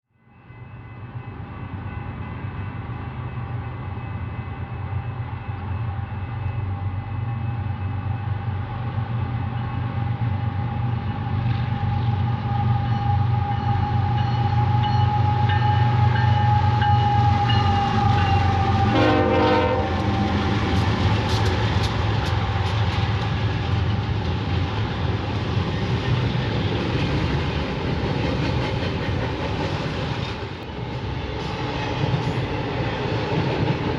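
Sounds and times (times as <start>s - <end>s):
locomotive diesel engines: 1.0s - 33.9s
train horn blowing: 11.8s - 21.8s.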